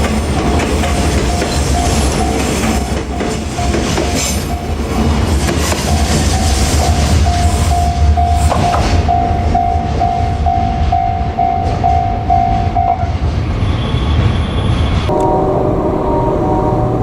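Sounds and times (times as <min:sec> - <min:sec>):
freight train rumble: 0:00.0 - 0:17.0
level crossing bell ringing: 0:07.2 - 0:13.0
sustained multi-pitch tone: 0:15.1 - 0:17.0.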